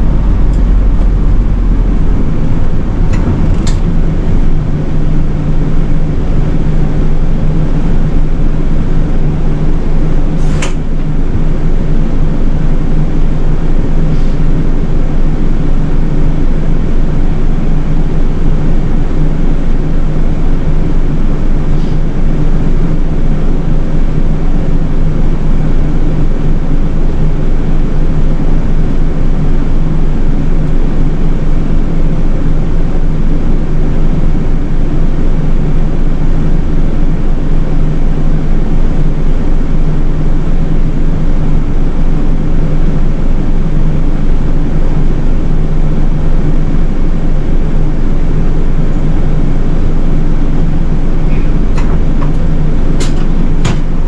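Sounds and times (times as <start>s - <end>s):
road noise: 0.0s - 8.2s
bus engine drone: 0.0s - 54.0s.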